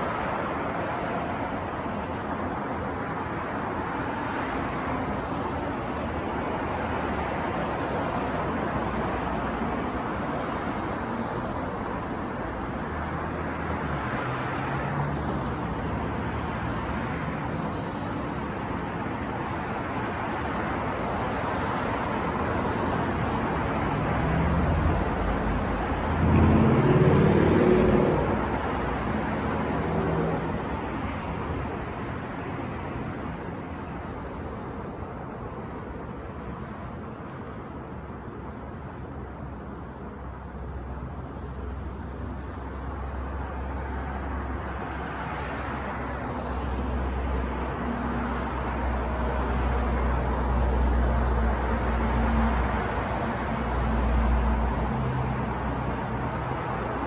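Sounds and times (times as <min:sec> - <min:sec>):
passing cars and tyre noise: 0:00.0 - 0:57.0
vehicle engine passing by: 0:24.0 - 0:30.7.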